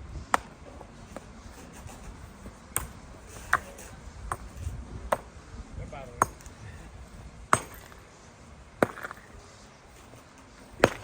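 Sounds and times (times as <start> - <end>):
hand tool striking stone: 6.2 - 6.6, 7.5 - 8.0, 8.8 - 9.2, 10.8 - 11.0.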